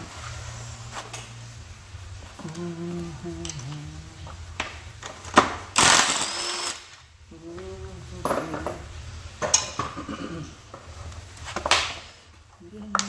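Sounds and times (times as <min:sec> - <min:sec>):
power tool whirring: 0:05.7 - 0:07.0.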